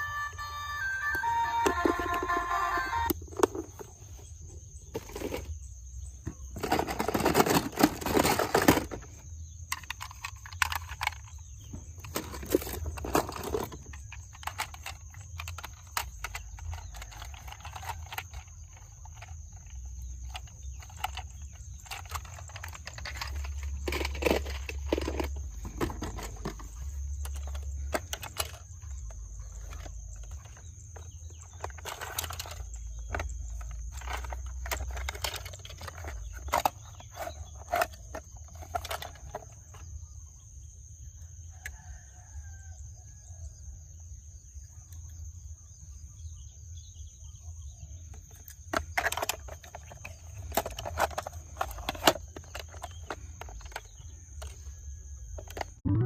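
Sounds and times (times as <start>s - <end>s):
faint high-pitched tone: 0.0s - 3.2s
toy cars clicking and knocking: 0.3s - 4.0s, 4.9s - 5.6s, 6.2s - 40.0s, 48.1s - 55.8s
rustling clatter of toy cars: 1.2s - 42.1s, 47.9s - 55.8s.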